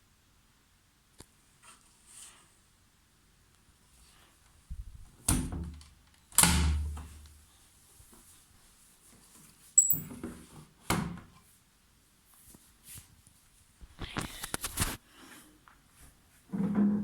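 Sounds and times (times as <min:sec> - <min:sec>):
high beep: 0:09.8 - 0:10.0.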